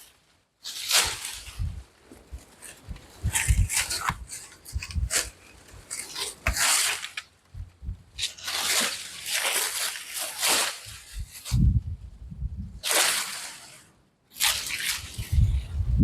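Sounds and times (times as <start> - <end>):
dry leaves rustling and tearing: 0.0 - 7.6, 8.2 - 11.8, 12.8 - 13.8, 14.4 - 15.7
wind buffeting microphone: 1.0 - 6.6, 7.5 - 8.3, 10.8 - 12.9, 15.0 - 16.0.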